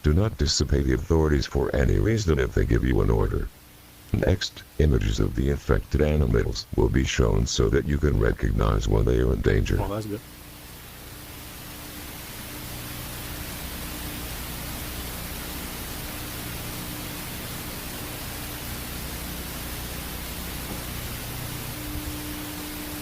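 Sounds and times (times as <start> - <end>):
static hiss: 0.0 - 23.0
low hum: 0.9 - 23.0
faint steady low tone: 12.8 - 23.0.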